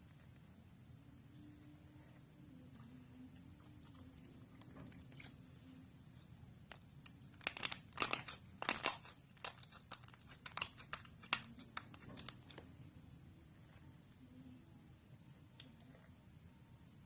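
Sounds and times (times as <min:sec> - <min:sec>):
slime crackling and popping: 0:06.7 - 0:12.6.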